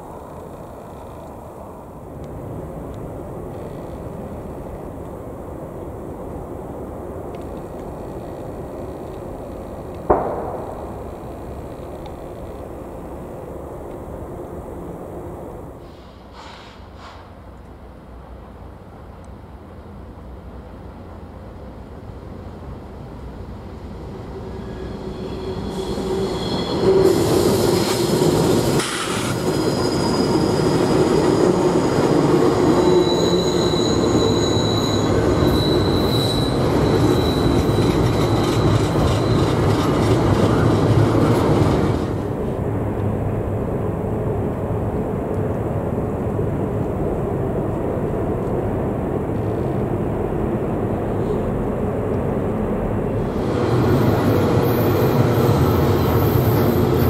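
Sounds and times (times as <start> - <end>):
heavy rumble of train: 0.0 - 57.0
train wheels squealing on rails: 15.8 - 17.5, 24.0 - 42.2, 53.2 - 57.0.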